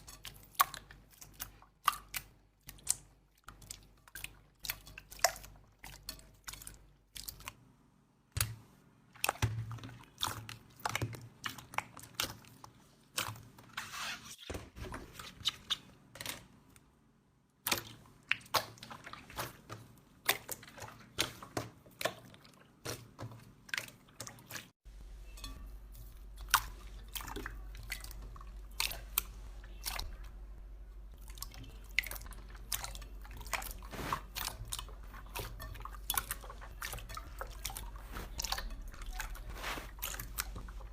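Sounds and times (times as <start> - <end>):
steady low hum: 24.8 - 40.9.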